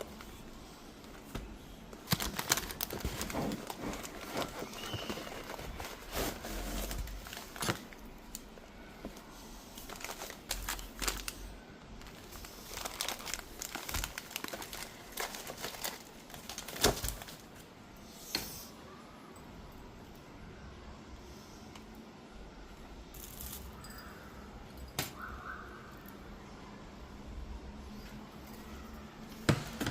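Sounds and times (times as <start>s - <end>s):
plastic packaging crinkling: 0.0s - 8.7s, 9.8s - 17.6s.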